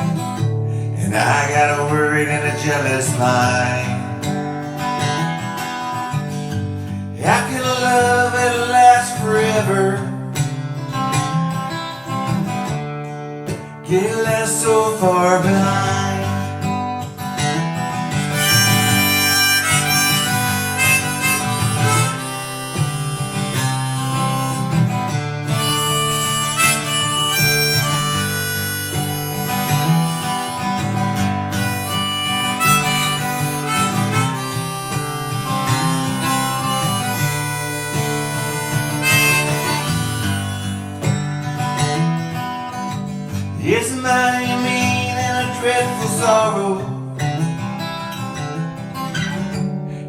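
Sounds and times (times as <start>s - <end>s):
strummed acoustic guitar: 0.0s - 50.0s
harmonica solo: 17.4s - 42.8s.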